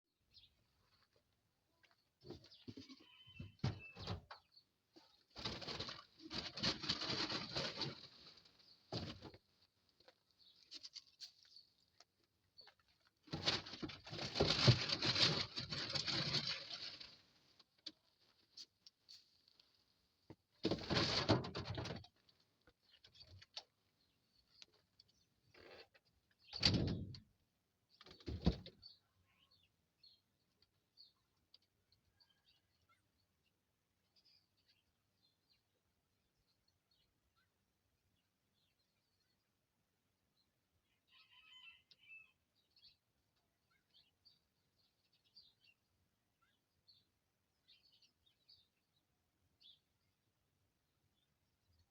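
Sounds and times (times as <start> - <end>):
birds rustling and wing flutter: 5.0 - 9.4, 13.0 - 19.6, 20.6 - 22.2
small birds chirping: 40.4 - 51.9.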